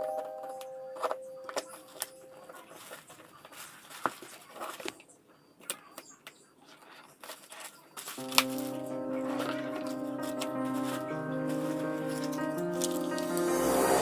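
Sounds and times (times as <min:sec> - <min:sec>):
soft rustling: 0:01.6 - 0:05.1.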